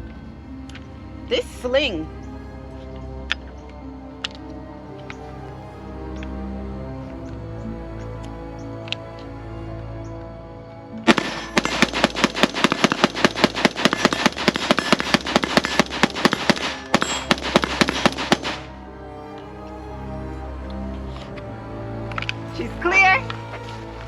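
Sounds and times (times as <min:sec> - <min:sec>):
background music: 0:00.0 - 0:24.0
rapid rifle gunshots: 0:11.1 - 0:18.7.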